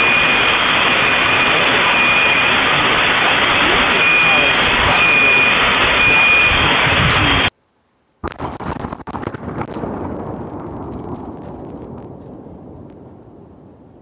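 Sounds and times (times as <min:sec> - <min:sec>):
explosion crackling rumble: 0:00.0 - 0:07.5, 0:08.2 - 0:14.0
short repeated beeps: 0:00.0 - 0:07.5
loud steady hiss: 0:00.0 - 0:07.7.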